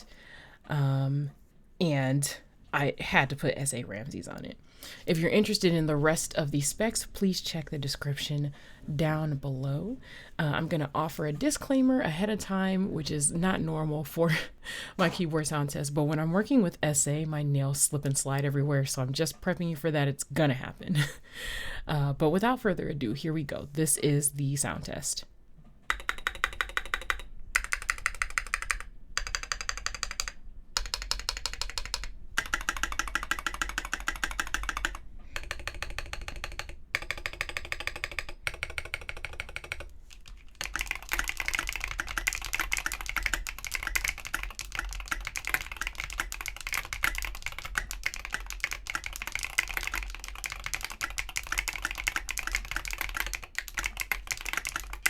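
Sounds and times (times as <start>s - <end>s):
mechanical keyboard typing: 25.9s - 55.0s.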